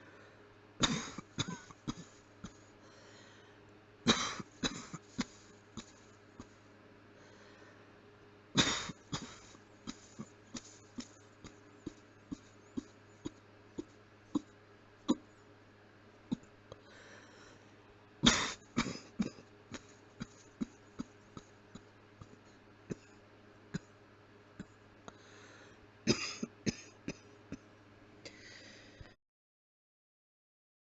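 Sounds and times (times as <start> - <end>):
person coughing with mouth closed: 0.8 - 2.7, 4.1 - 6.6, 8.6 - 14.5, 18.2 - 23.9, 26.1 - 27.7.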